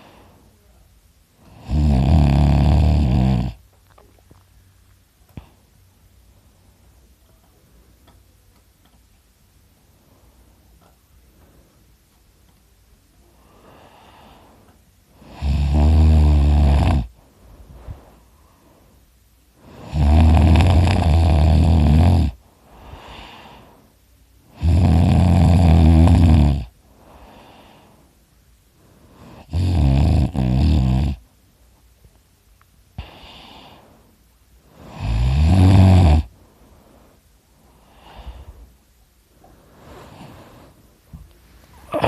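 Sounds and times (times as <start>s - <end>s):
quiet breaths out: 0.0s - 1.6s, 3.6s - 15.4s, 17.1s - 20.0s, 22.3s - 24.6s, 26.7s - 29.5s, 32.9s - 35.1s, 36.2s - 42.0s
man snoring loudly: 1.5s - 3.6s, 15.2s - 17.1s, 19.7s - 22.4s, 24.5s - 26.7s, 29.3s - 31.2s, 34.9s - 36.3s.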